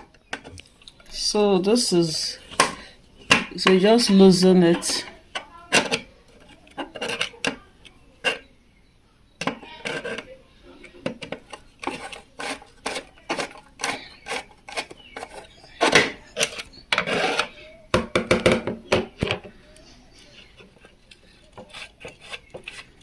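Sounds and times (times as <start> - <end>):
screwdriver scraping metal: 5.7 - 7.6, 9.4 - 17.6, 20.2 - 23.0
metal taps: 9.4 - 12.1.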